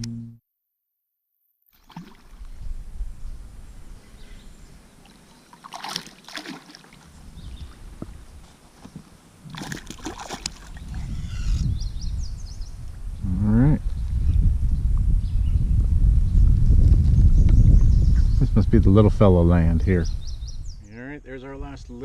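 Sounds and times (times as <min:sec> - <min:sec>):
wind rumble on microphone: 0:02.4 - 0:04.9, 0:07.1 - 0:08.6, 0:10.5 - 0:22.0
water sloshing around a boat: 0:04.9 - 0:11.1.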